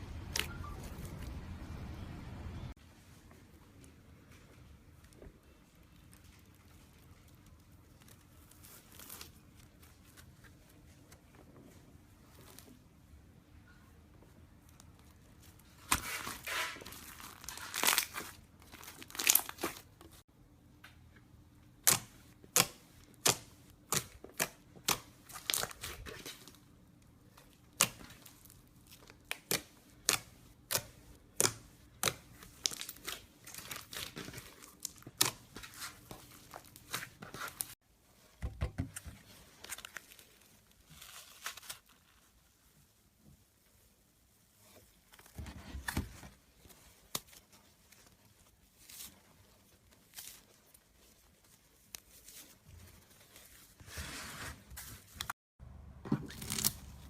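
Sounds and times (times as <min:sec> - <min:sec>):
slime crinkling and crackling: 0:05.0 - 0:11.0, 0:14.6 - 0:20.2, 0:21.8 - 0:26.6, 0:27.3 - 0:37.8, 0:39.2 - 0:42.9, 0:56.2 - 0:57.0.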